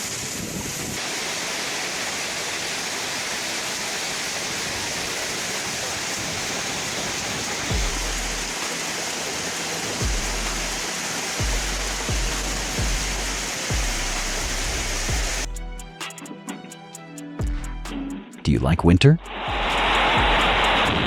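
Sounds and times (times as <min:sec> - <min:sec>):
steady rushing noise: 0:00.0 - 0:18.4, 0:19.2 - 0:21.0
deep bass thuds of music: 0:07.7 - 0:08.6, 0:10.0 - 0:10.8, 0:11.4 - 0:16.0, 0:17.4 - 0:21.0.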